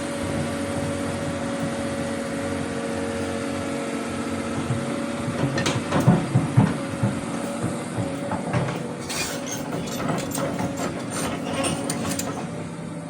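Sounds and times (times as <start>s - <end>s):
excavator engine running: 0.0s - 13.0s
heavy knocks and clatter: 4.4s - 12.6s.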